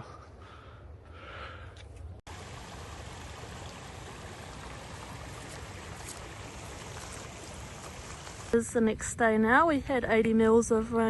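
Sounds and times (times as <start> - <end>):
water rushing: 2.3 - 8.6.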